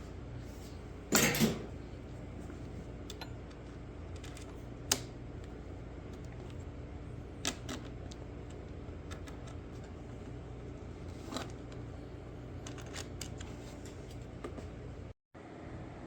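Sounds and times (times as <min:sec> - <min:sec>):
steady low hum: 0:00.0 - 0:16.0
hand tools and metal parts clicking: 0:01.1 - 0:01.6.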